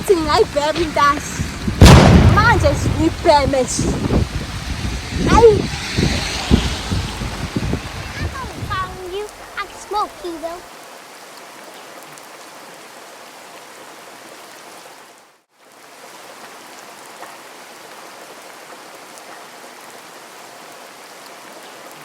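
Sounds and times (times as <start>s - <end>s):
raindrop ticks: 0.0s - 4.7s
steady rain hiss: 0.0s - 22.0s.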